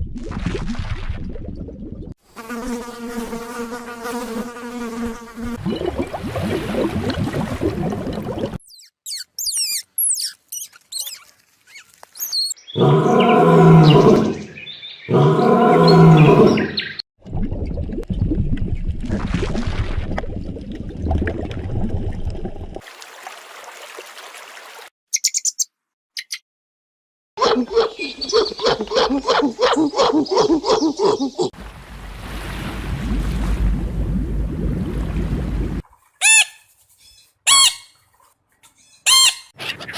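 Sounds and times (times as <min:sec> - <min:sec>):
high animal chirps and squeaks: 0:08.6 - 0:12.6, 0:25.1 - 0:26.4, 0:36.2 - 0:38.0, 0:38.8 - 0:39.9
animal grunting: 0:12.7 - 0:14.5, 0:15.1 - 0:16.7
loud drawn-out low animal calls: 0:12.7 - 0:14.5, 0:15.1 - 0:16.8.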